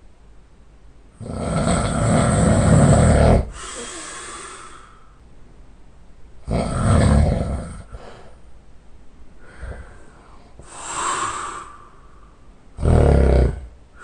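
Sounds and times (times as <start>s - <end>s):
person snoring heavily: 1.2s - 5.1s, 6.4s - 8.2s, 9.4s - 12.2s, 12.8s - 14.0s
quiet breath: 3.5s - 5.2s, 7.8s - 8.6s, 9.4s - 12.7s.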